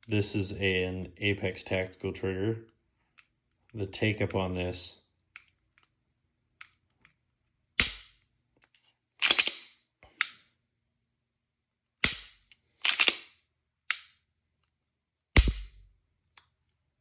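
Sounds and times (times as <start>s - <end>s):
metallic clicks of pistol slide: 8.7s - 10.4s, 12.1s - 13.3s
pistol trigger snaps: 13.9s - 14.2s.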